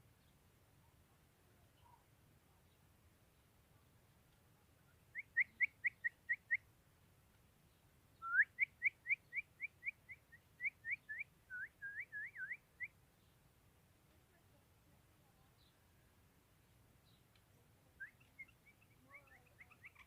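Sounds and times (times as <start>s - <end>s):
bulbul whistled calls: 5.1s - 6.7s, 8.2s - 13.3s, 18.0s - 20.0s.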